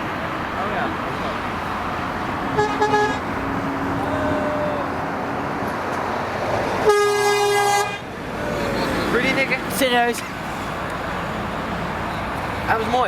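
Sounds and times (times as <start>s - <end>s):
loud background noise: 0.0s - 13.0s
vehicle horn tooting: 2.6s - 3.2s, 6.8s - 8.0s.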